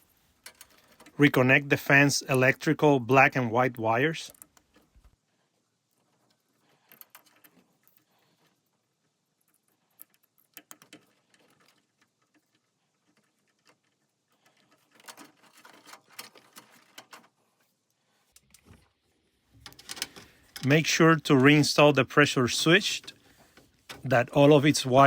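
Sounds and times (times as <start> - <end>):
wire connectors clicking and rattling: 0.0 - 1.3, 3.7 - 5.2, 5.9 - 17.7, 18.3 - 18.9, 19.5 - 21.8, 22.6 - 25.0.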